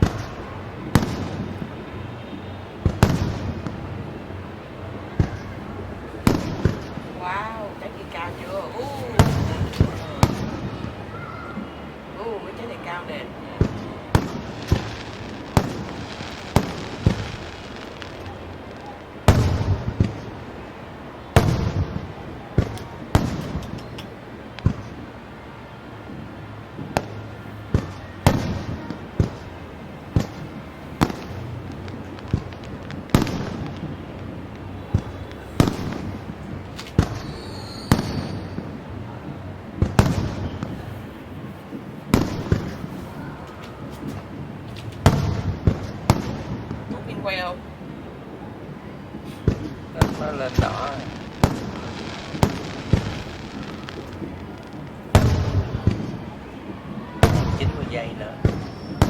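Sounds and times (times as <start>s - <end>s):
echoing rumble: 0.0s - 11.6s
fireworks bangs: 0.0s - 59.0s.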